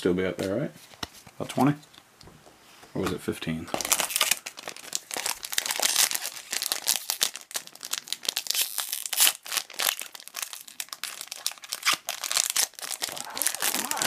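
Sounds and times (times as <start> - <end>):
plastic wrapper crinkling and tearing: 3.7 - 14.0.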